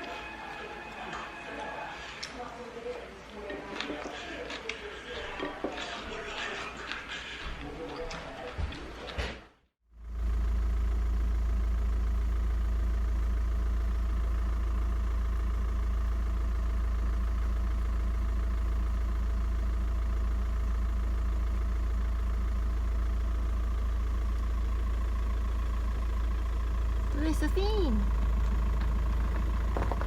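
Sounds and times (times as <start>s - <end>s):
car engine and road rumble: 9.9s - 30.0s.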